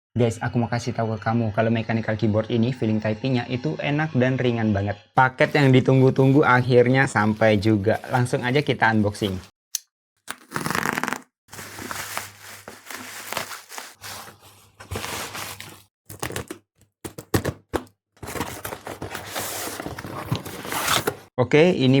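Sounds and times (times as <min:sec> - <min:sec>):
paper rustling and ripping: 0:05.5 - 0:09.5, 0:10.3 - 0:16.6, 0:18.2 - 0:22.0
plastic crinkling: 0:06.4 - 0:09.5, 0:10.3 - 0:16.6.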